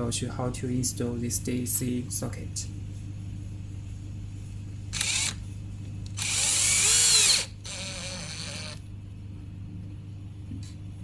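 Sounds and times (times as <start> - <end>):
power drill motor whirring: 5.0 - 5.4, 6.1 - 8.8.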